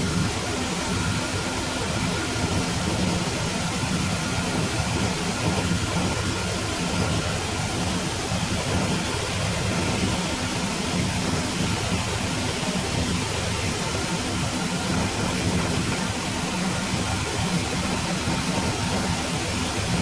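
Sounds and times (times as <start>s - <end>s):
broad rushing noise: 0.0s - 20.0s
combine harvester engine drone: 0.0s - 20.0s.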